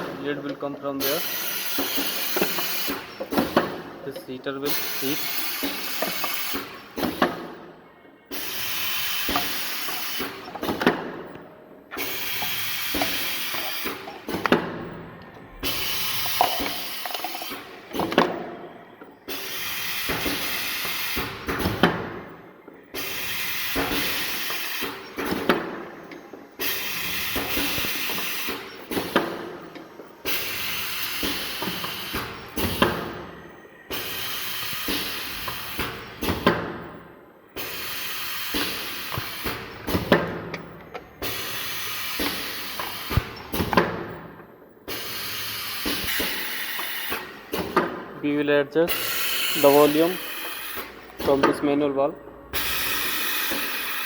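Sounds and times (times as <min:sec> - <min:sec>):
pneumatic air hiss: 0:01.0 - 0:03.8, 0:04.7 - 0:07.3, 0:08.3 - 0:10.9, 0:12.0 - 0:14.5, 0:15.6 - 0:18.2, 0:19.3 - 0:21.9, 0:22.9 - 0:25.7, 0:26.6 - 0:29.5, 0:30.2 - 0:33.2, 0:33.9 - 0:36.6, 0:37.6 - 0:40.5, 0:41.2 - 0:43.8, 0:44.9 - 0:47.8, 0:48.9 - 0:51.5, 0:52.6 - 0:54.0.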